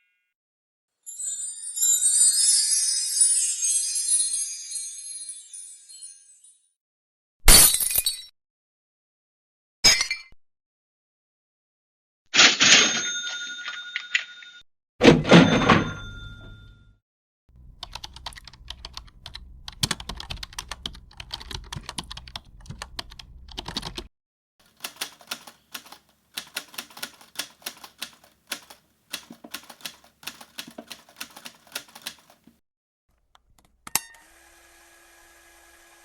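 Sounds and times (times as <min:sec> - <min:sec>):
typing on computer keyboard: 0:17.5 - 0:24.1, 0:24.7 - 0:32.6.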